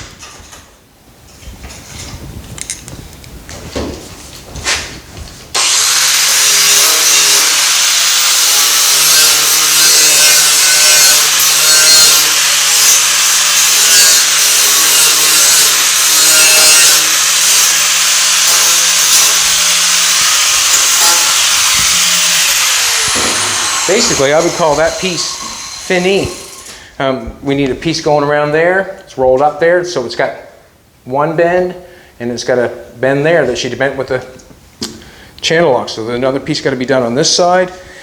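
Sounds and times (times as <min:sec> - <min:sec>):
electric sander on sheet metal: 0:05.6 - 0:26.8.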